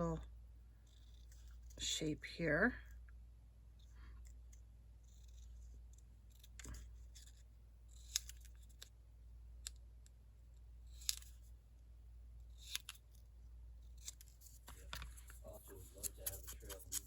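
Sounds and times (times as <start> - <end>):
scissors snipping paper: 4.3 - 8.9, 10.9 - 11.4, 12.5 - 13.2, 13.8 - 17.0.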